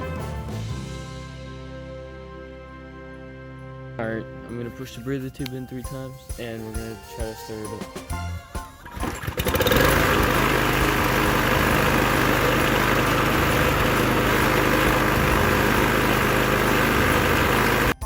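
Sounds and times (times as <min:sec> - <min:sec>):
lawn mower engine running: 0:08.8 - 0:18.0.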